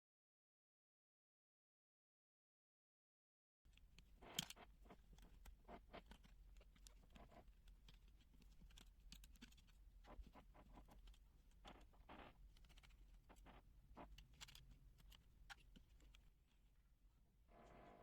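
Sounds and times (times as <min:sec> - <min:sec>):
faint clicks and taps: 0:03.7 - 0:16.8.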